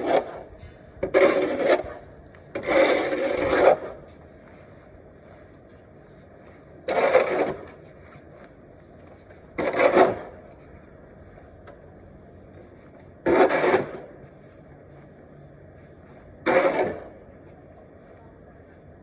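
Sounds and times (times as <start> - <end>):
snow shovel scraping snow: 0.0 - 4.0, 6.9 - 7.8, 9.6 - 10.6, 13.3 - 14.0.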